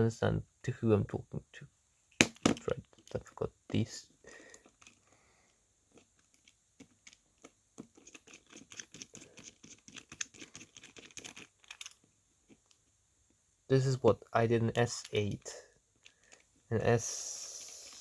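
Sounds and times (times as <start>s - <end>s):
light clicks and taps of small tools: 15.0s - 16.5s.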